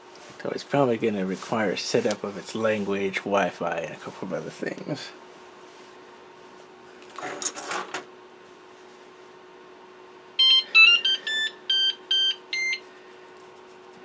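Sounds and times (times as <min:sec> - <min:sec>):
electronic startup beeping tune: 0:10.4 - 0:12.7.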